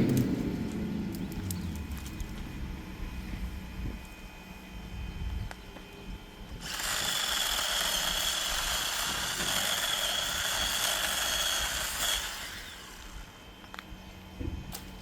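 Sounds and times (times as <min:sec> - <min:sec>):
electric chainsaw whining: 0:06.6 - 0:13.8.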